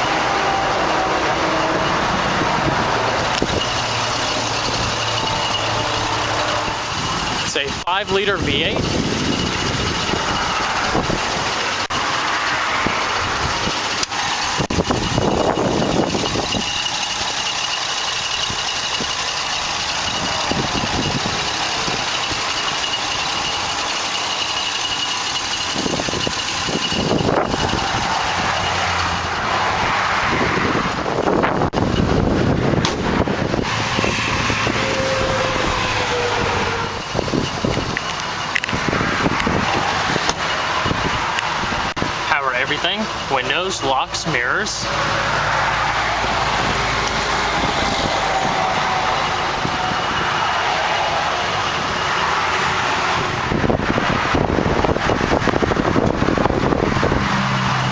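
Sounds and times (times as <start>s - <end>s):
highway traffic rumble: 0.0s - 57.9s
wind buffeting microphone: 8.2s - 16.8s, 25.7s - 42.3s, 51.5s - 57.9s.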